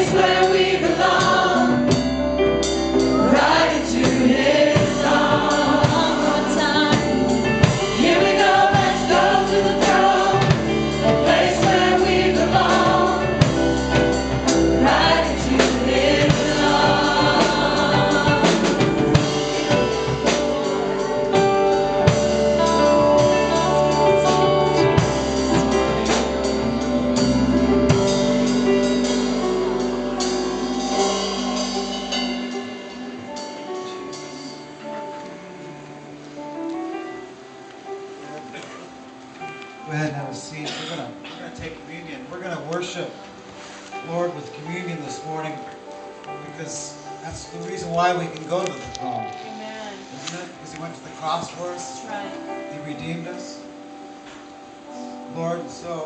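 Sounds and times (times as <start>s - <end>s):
drums striking: 0.0s - 34.7s
choir and congregation singing: 0.0s - 37.3s
band playing: 0.0s - 46.0s.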